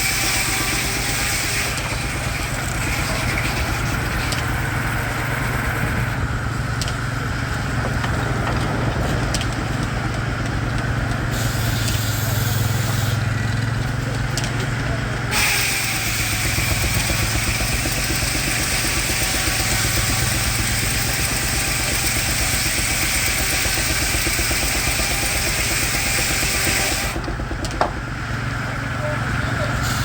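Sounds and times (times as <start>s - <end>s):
circular saw cutting log: 0.0s - 7.4s, 10.5s - 14.0s, 14.9s - 27.3s.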